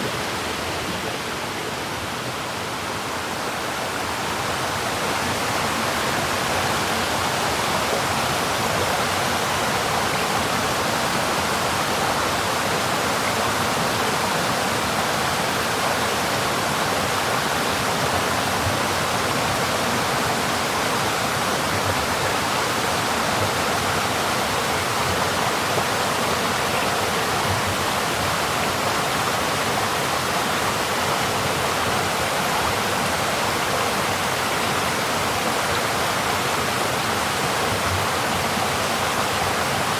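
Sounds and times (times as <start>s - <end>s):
mountain stream flowing: 0.0s - 39.9s.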